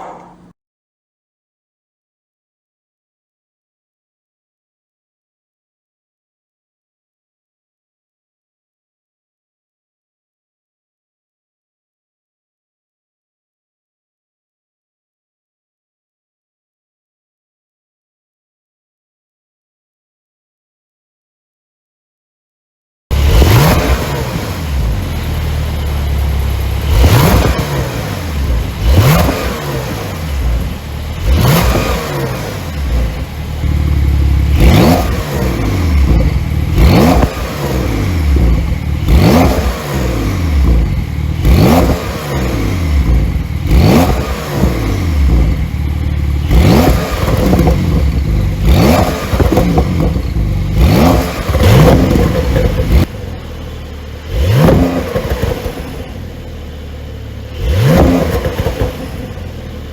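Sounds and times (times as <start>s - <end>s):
car engine revving: 23.1s - 59.9s
exhaust pops: 26.4s - 39.7s, 40.6s - 42.1s, 46.5s - 53.3s.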